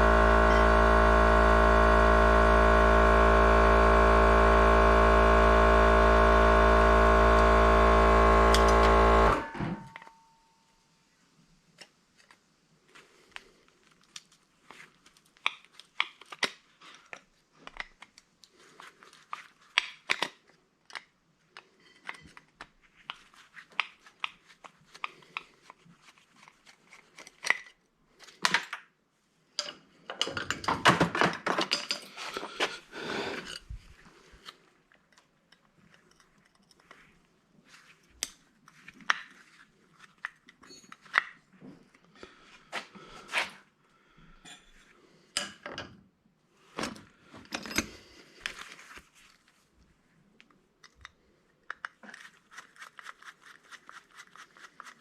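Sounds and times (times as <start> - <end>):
metal parts clicking and clinking: 29.6 - 32.2, 35.0 - 37.0.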